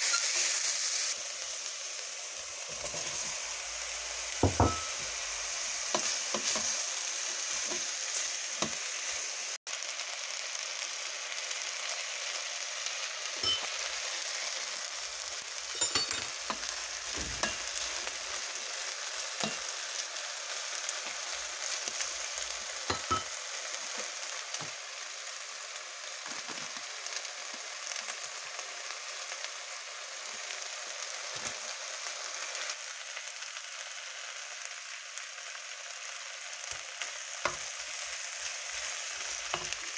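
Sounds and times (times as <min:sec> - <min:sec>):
food sizzling in a frying pan: 0:00.0 - 0:39.9
utensil knocking on pan: 0:04.4 - 0:05.1.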